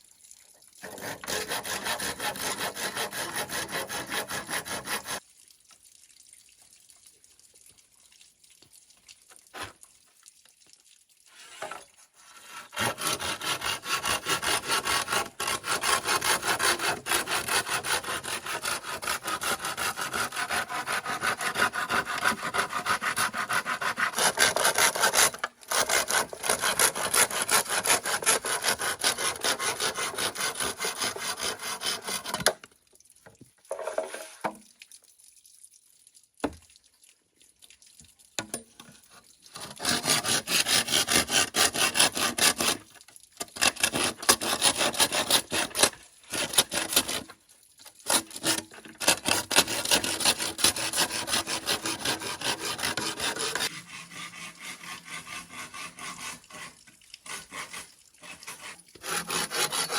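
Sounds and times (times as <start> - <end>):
hand saw cutting bamboo: 0.8 - 5.2, 11.4 - 32.6, 39.6 - 47.4, 48.0 - 59.9.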